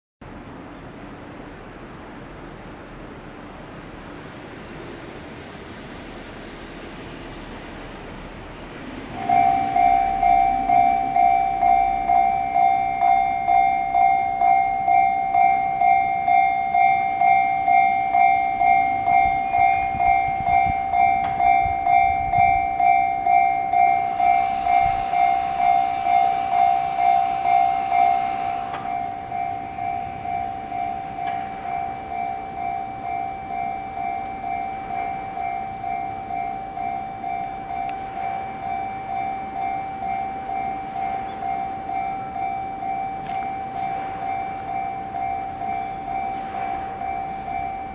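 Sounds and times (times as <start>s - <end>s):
train rumbling past: 0.2s - 47.9s
level crossing warning bell: 8.2s - 47.9s.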